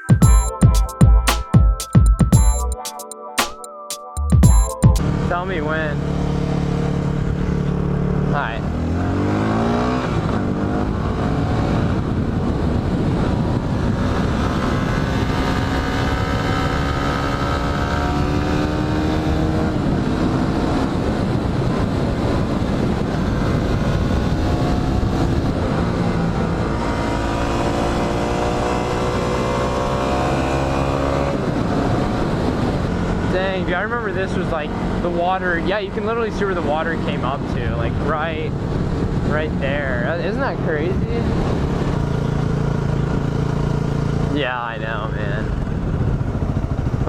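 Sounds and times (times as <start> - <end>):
motorcycle engine running: 45.1 - 47.0.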